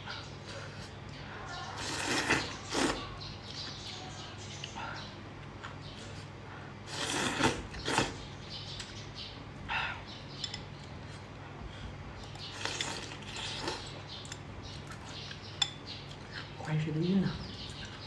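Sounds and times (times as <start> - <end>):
person eating: 0.3 - 3.2, 5.6 - 8.3, 12.2 - 16.6.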